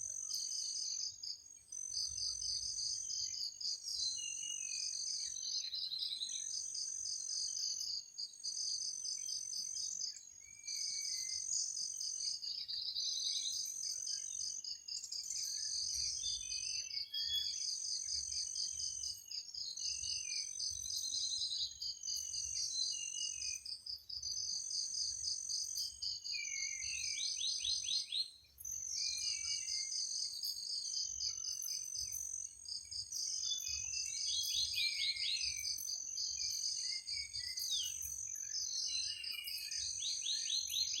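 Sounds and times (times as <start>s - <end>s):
crickets trilling: 13.0s - 41.0s.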